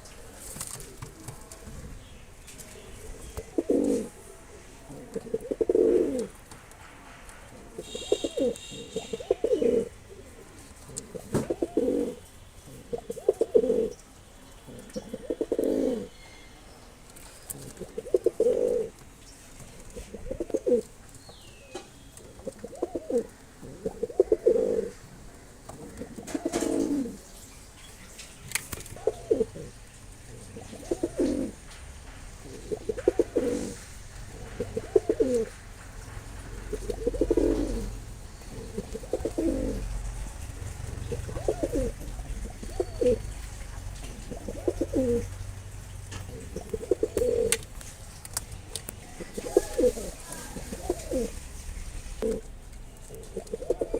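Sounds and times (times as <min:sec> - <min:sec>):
pigeon cooing: 0:02.8 - 0:06.4, 0:07.6 - 0:14.0, 0:14.7 - 0:16.1, 0:17.5 - 0:19.0, 0:19.9 - 0:21.0, 0:21.7 - 0:25.0, 0:25.6 - 0:27.3, 0:28.8 - 0:31.6, 0:32.4 - 0:35.6, 0:36.4 - 0:45.4, 0:46.1 - 0:47.6, 0:48.9 - 0:52.5, 0:53.1 - 0:53.9.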